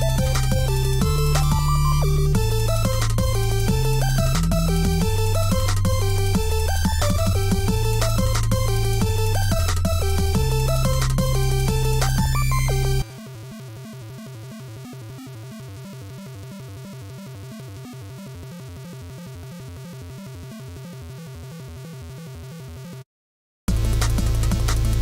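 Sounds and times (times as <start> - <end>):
electronic music with fast pulse: 0.0 - 23.0, 23.7 - 25.0.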